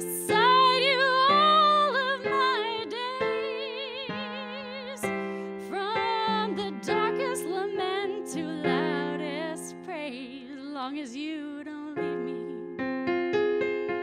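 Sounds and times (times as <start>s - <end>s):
person singing with vibrato: 0.0s - 12.8s
keyboard chords: 12.0s - 14.0s.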